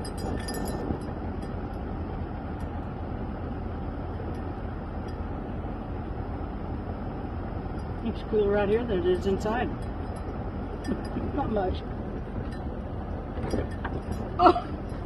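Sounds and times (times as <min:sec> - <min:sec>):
faint clinks: 0:00.0 - 0:01.6, 0:09.1 - 0:11.6, 0:13.4 - 0:15.0
low rumbling drone: 0:00.0 - 0:15.0.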